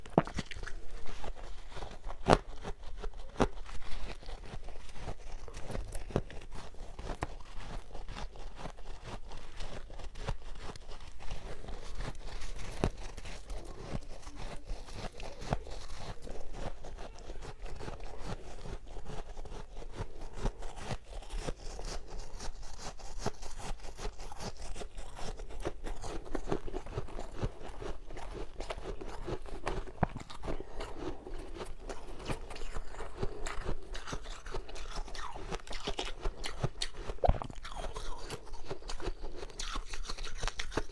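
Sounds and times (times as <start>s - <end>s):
ice being chewed and crunching: 0.0s - 40.9s.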